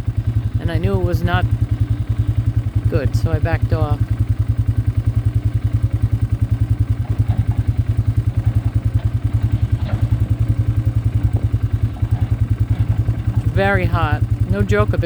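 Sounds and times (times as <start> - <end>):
small engine chugging: 0.0 - 15.0
rattle: 4.0 - 15.0.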